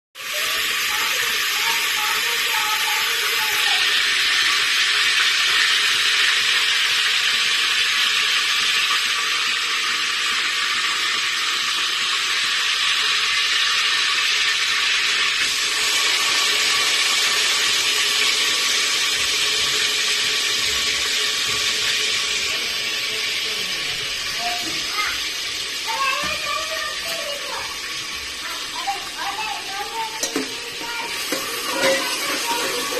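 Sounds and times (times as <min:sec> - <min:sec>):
food sizzling in hot oil: 0:00.2 - 0:32.9.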